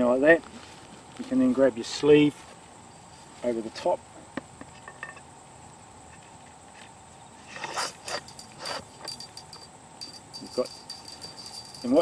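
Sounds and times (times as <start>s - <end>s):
crickets chirping: 0.0s - 12.0s
sleeve scraping on post: 7.4s - 9.2s.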